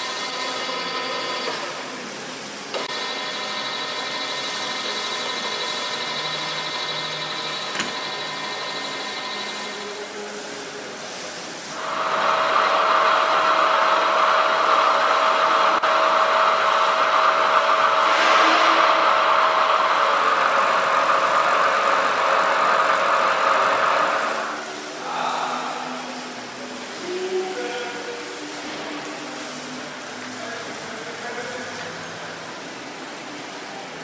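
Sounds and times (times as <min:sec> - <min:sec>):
milling machine running: 0:00.0 - 0:10.8, 0:11.6 - 0:24.8.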